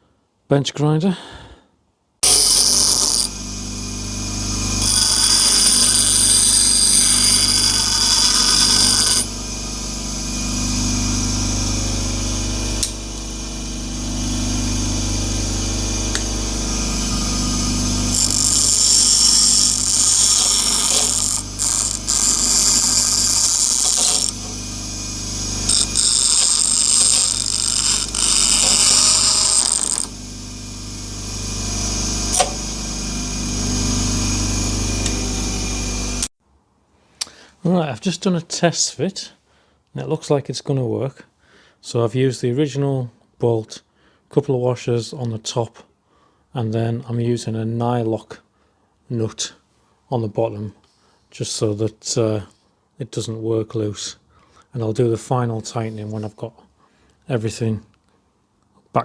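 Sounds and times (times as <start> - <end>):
steel grinding hiss: 2.2 - 3.4, 4.0 - 10.0, 16.6 - 30.1
bench grinder motor hum: 2.2 - 36.3.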